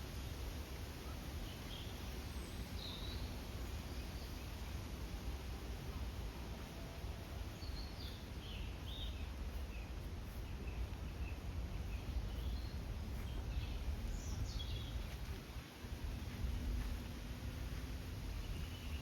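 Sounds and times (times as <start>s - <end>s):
steady low rumble: 4.6s - 19.0s
birds chirping: 6.6s - 19.0s.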